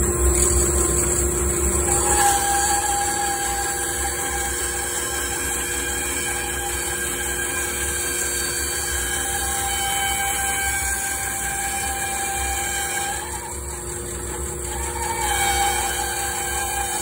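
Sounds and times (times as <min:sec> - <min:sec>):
shop vacuum: 0:00.0 - 0:17.0
woodworking machinery running: 0:00.0 - 0:17.0.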